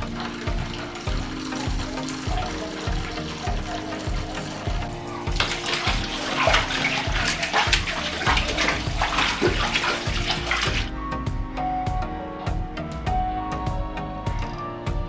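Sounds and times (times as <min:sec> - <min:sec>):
water sloshing in a bathtub: 0:00.0 - 0:10.9.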